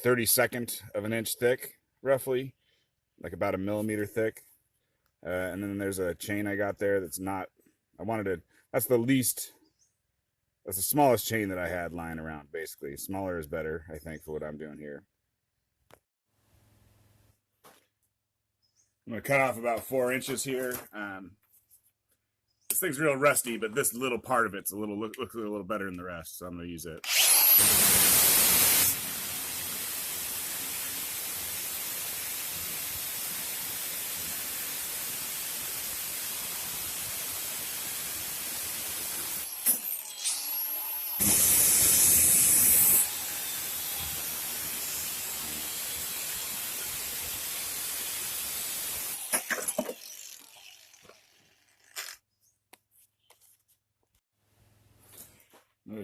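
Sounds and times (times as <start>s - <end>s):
grinder cutting steel: 27.0s - 52.2s.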